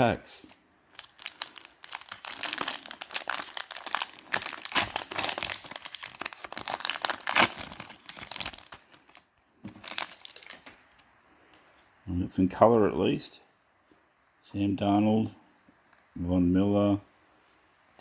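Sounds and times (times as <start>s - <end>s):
foil wrapper tearing and crinkling: 0.9s - 10.7s.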